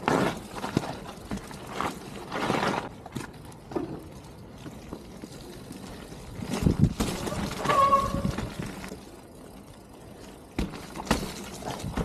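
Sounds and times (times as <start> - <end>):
tyres rolling through wet mud: 0.0 - 12.0
bike landing thud: 6.5 - 8.9, 10.6 - 12.0.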